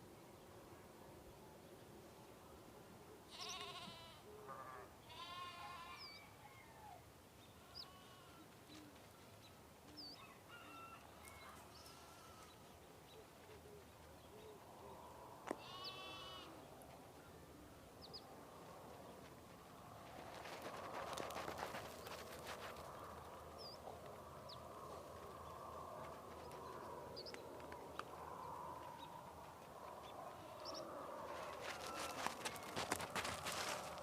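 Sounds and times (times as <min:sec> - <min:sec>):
sheep bleating: 0:03.3 - 0:06.2, 0:07.6 - 0:08.4, 0:11.8 - 0:12.6, 0:15.5 - 0:16.6.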